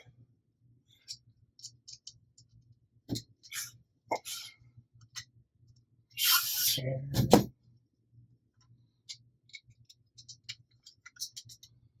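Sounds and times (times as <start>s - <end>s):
screws and plastic parts clicking: 1.0s - 2.6s, 9.0s - 11.8s.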